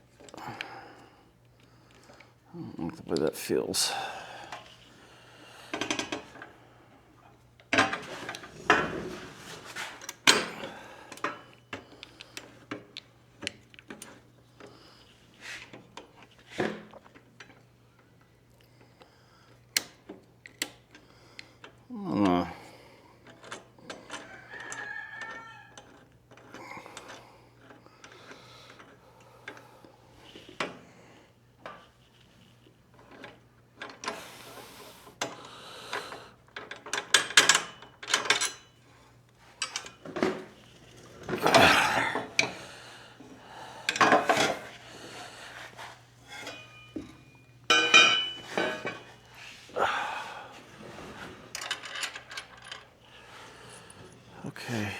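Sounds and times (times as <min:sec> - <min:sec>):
metal bolts and tools clinking: 0:46.4 - 0:49.1, 0:51.5 - 0:52.9.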